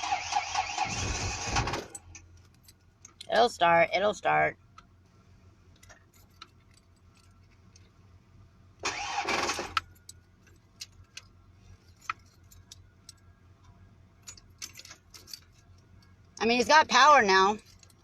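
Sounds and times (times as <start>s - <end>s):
car engine cranking: 0.0s - 3.3s, 8.8s - 16.2s, 17.5s - 18.0s
low steady hum: 0.1s - 18.0s
light clicks and rattles: 5.7s - 8.0s, 9.7s - 16.5s, 17.5s - 18.0s.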